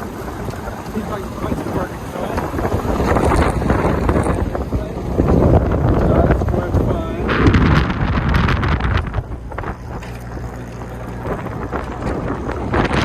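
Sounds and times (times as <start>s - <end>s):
car engine humming: 0.0s - 13.0s
wind buffeting the microphone: 0.0s - 13.0s.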